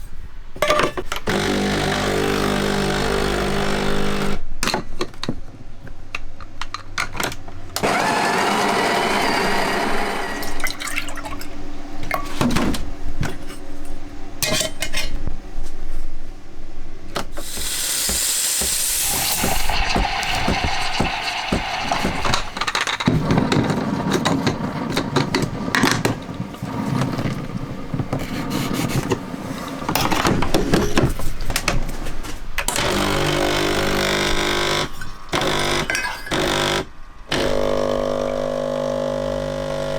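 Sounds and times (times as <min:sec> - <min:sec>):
espresso machine pump buzzing: 0:07.8 - 0:10.6, 0:17.4 - 0:22.8, 0:32.8 - 0:39.9
liquid pouring: 0:10.4 - 0:11.6, 0:18.9 - 0:22.8
loud hiss: 0:17.4 - 0:22.7.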